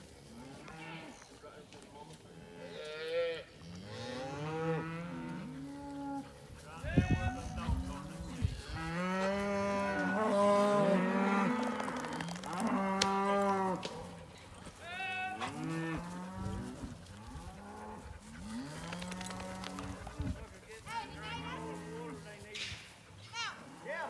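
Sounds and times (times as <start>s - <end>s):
cattle mooing: 2.5s - 6.2s, 8.6s - 14.2s, 15.4s - 20.2s.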